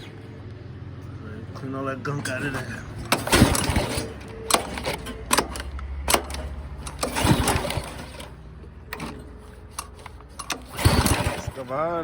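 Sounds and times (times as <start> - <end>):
tiller engine running: 2.2 - 12.0
sharp knocks and clanks: 2.3 - 11.7.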